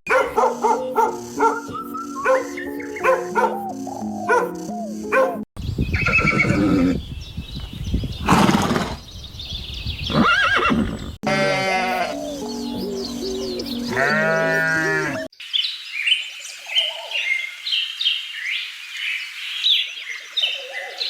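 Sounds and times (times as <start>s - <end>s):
dog barking: 0.1s - 3.7s, 4.3s - 5.4s
background music: 0.1s - 5.4s, 11.3s - 15.3s
horse whinnying: 6.0s - 7.0s, 8.2s - 9.0s, 10.1s - 12.2s
animal call: 10.1s - 12.5s, 13.8s - 15.3s.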